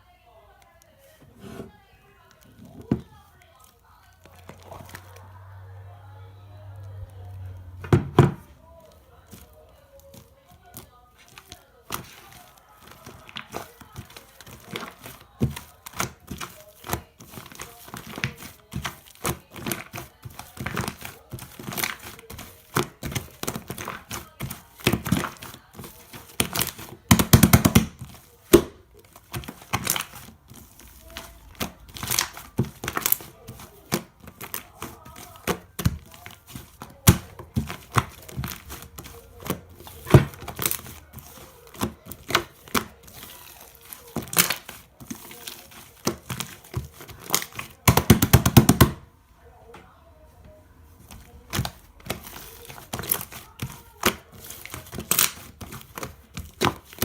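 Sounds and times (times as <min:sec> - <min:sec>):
foam slime popping and squelching: 0:10.6 - 0:49.0, 0:51.1 - 0:57.0.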